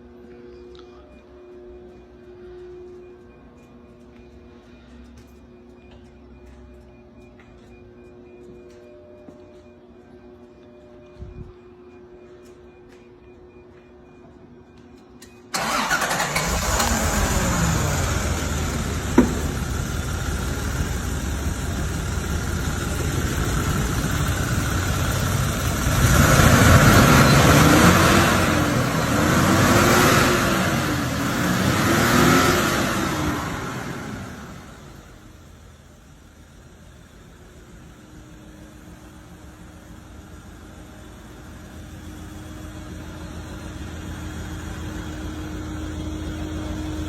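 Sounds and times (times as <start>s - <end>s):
car engine revving: 15.6s - 34.8s.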